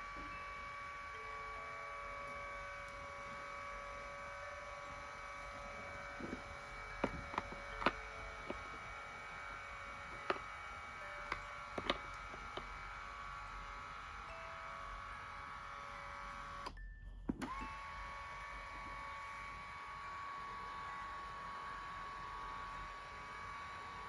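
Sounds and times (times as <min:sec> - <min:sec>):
electric hum: 0:00.0 - 0:23.4
sharp clicks and knocks: 0:07.0 - 0:08.6, 0:11.3 - 0:12.7.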